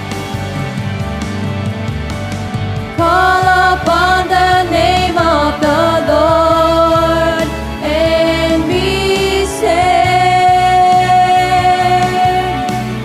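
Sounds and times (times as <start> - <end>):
pulsing bass line: 0.0 - 13.0
voices singing held notes: 3.0 - 13.0.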